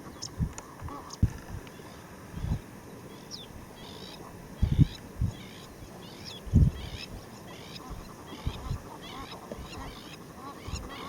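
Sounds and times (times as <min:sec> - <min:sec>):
bird calling: 0:00.0 - 0:11.0
dull low thumps: 0:00.4 - 0:01.7, 0:04.6 - 0:05.4, 0:06.5 - 0:06.8.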